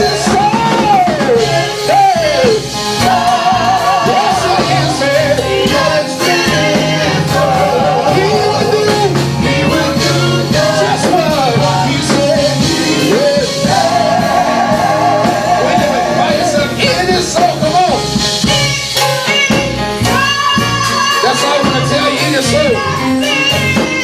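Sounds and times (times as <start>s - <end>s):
person singing with vibrato: 0.0s - 17.6s
gospel band playing: 0.0s - 24.0s.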